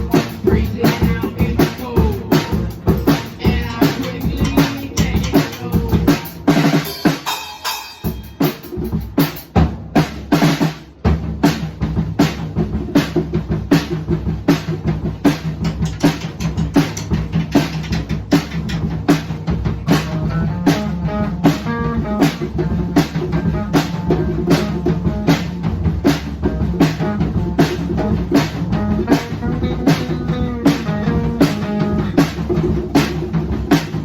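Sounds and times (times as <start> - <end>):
bass line: 0.0 - 6.9, 11.0 - 34.0
guitar: 0.0 - 8.6, 15.6 - 34.0
drum kit beat: 0.0 - 34.0.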